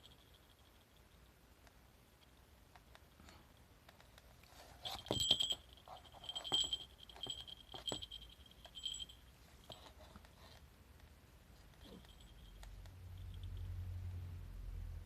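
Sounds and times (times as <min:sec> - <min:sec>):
small bell jingling: 0:00.0 - 0:01.3, 0:04.6 - 0:10.2, 0:11.8 - 0:13.8.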